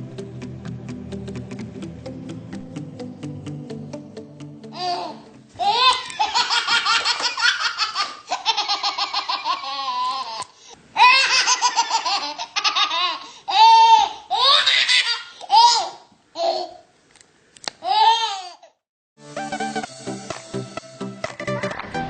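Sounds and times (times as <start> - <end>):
young child laughing: 4.8 - 16.8.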